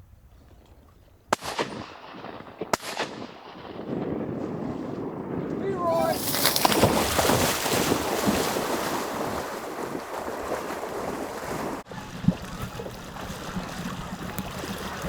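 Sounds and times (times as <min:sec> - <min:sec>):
splashing through shallow water: 0:05.8 - 0:15.0.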